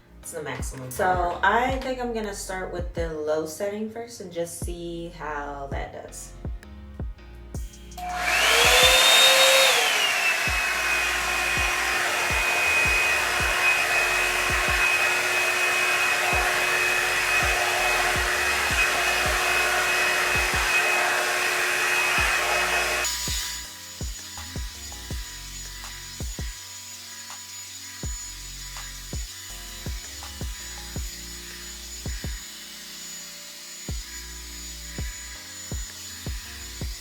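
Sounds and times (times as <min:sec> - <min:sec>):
hair dryer motor whine: 0:07.6 - 0:37.0.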